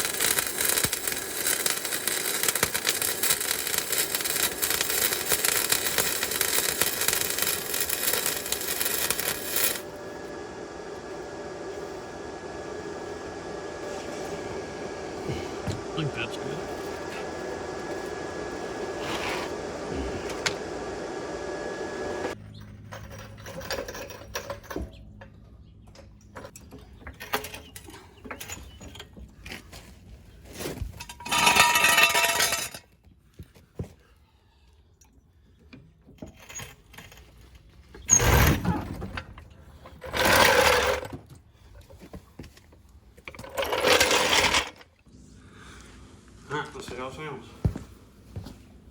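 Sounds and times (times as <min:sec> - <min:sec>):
scraping bursts: 0:00.0 - 0:09.9
tools and metal parts clinking: 0:00.0 - 0:09.9, 0:22.4 - 0:29.6, 0:30.6 - 0:32.9, 0:43.2 - 0:44.9
steady hum with faint whine: 0:00.0 - 0:22.4, 0:38.2 - 0:48.9.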